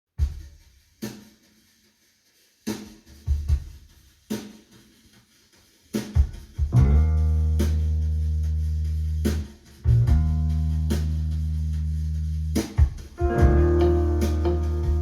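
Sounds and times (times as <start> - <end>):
drum kit hits: 12.8 - 15.0.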